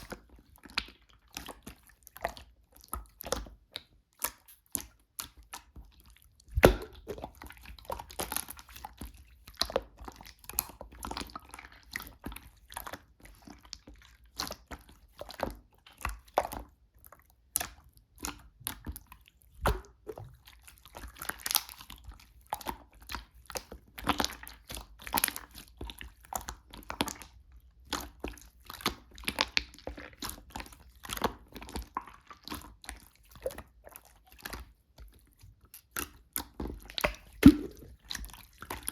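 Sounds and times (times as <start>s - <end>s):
slime squished by hand: 0.0s - 13.0s, 26.4s - 38.9s.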